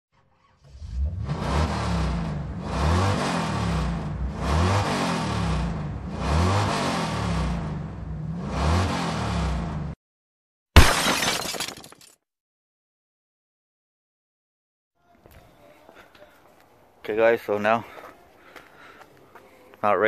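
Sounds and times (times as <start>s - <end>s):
car engine revving: 0.4s - 10.0s.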